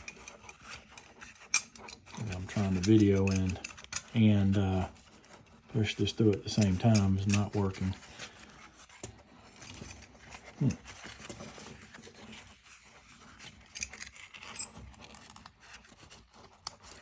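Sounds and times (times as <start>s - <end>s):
low voice sound: 10.6s - 10.8s.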